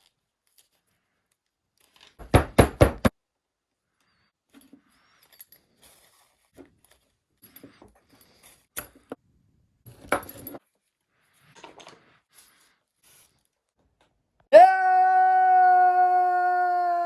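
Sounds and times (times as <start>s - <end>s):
belt buckles clinking: 4.4s - 9.2s.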